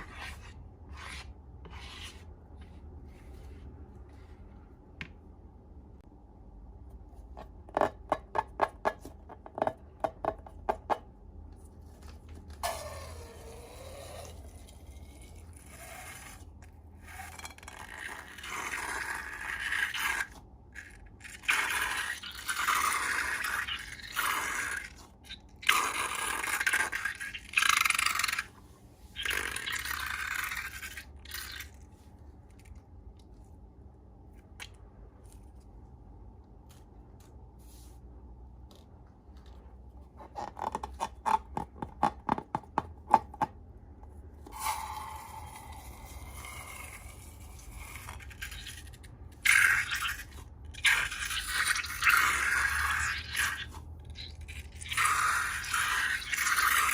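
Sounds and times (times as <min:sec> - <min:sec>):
slime scraping by hand: 0:00.0 - 0:04.7.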